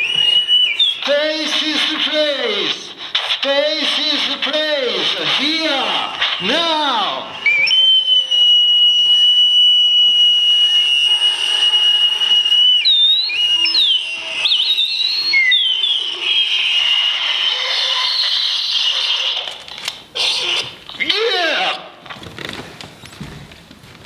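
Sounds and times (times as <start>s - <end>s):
high whistling tone: 0.0s - 18.8s.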